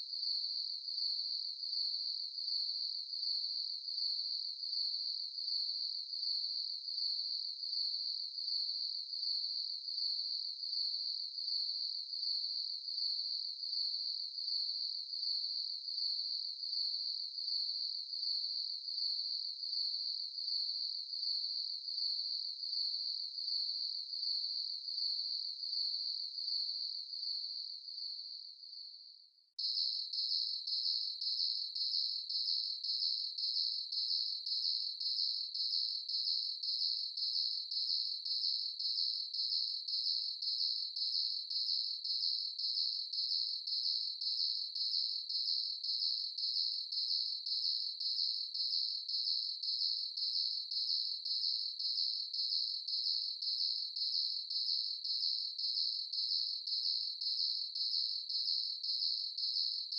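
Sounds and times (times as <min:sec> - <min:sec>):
cricket chirping: 0:29.6 - 0:59.9.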